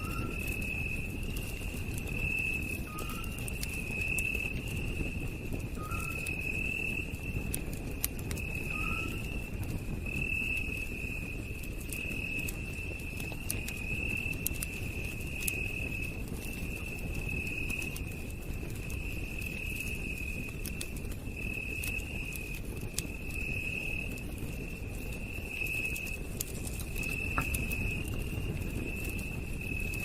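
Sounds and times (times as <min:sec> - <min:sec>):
campfire crackling and popping: 0:00.0 - 0:30.0
insect trilling: 0:08.6 - 0:09.2, 0:26.8 - 0:28.1.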